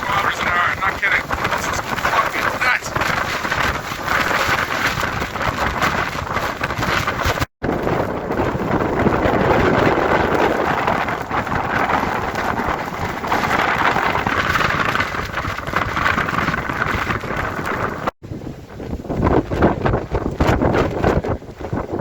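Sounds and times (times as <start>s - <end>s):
hurricane wind: 0.0s - 22.0s
driving rain: 7.2s - 18.2s.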